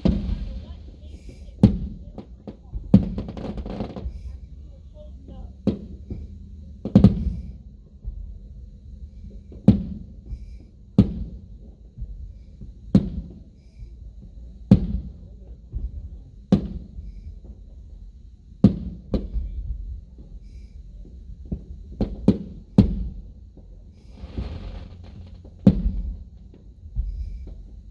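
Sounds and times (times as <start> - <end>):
firework shells booming: 0.0 - 4.3, 5.7 - 7.6, 22.0 - 27.7.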